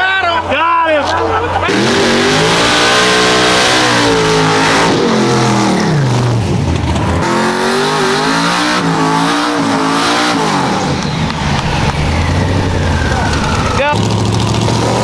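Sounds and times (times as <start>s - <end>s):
engine with wavering pitch: 1.4s - 15.0s
race car engine falling in pitch: 10.3s - 15.0s
low rumble: 10.5s - 14.6s.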